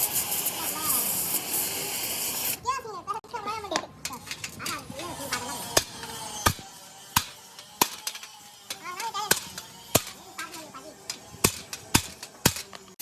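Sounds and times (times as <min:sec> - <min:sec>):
hammer striking metal: 0:05.3 - 0:12.8.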